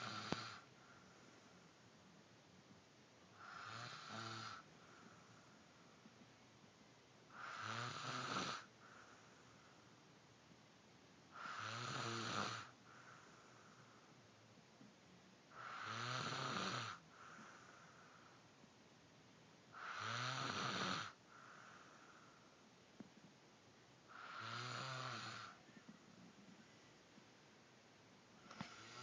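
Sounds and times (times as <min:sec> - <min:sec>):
snoring: 0:00.0 - 0:00.7, 0:03.4 - 0:05.1, 0:07.3 - 0:09.2, 0:11.3 - 0:13.2, 0:15.5 - 0:17.8, 0:19.7 - 0:22.1, 0:24.1 - 0:25.6, 0:28.4 - 0:29.0
soft breath: 0:00.0 - 0:01.8, 0:04.5 - 0:06.2, 0:08.6 - 0:10.2, 0:12.6 - 0:14.5, 0:17.0 - 0:18.7, 0:21.1 - 0:23.3, 0:28.3 - 0:29.0.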